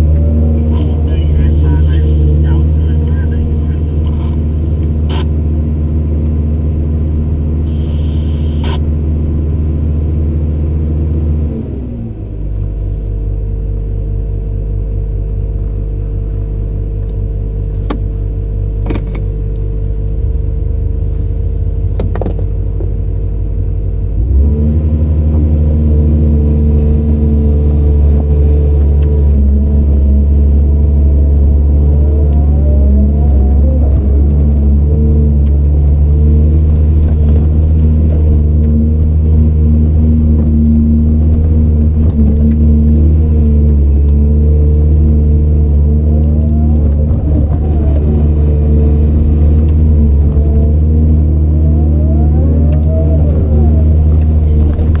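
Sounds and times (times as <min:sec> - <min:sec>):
heavy machinery diesel engine: 0:00.0 - 0:55.0.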